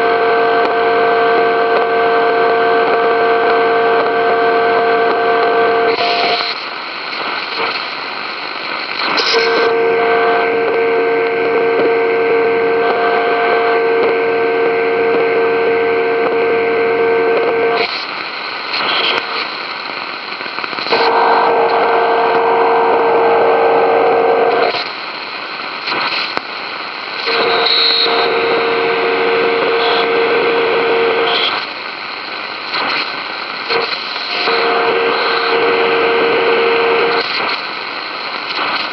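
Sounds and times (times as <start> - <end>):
radio signal tones humming: 0.0 - 6.6, 9.3 - 17.8, 20.7 - 24.8, 27.2 - 31.7, 33.7 - 37.2
radio static hiss: 0.0 - 38.9.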